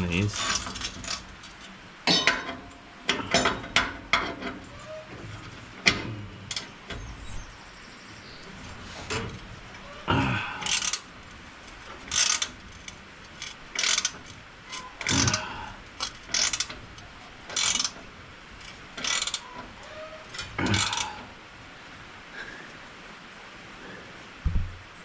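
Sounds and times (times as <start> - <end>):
ratchet wrench clicking: 10.6 - 11.0, 12.1 - 15.4, 16.0 - 16.8, 17.5 - 18.0, 18.6 - 19.4.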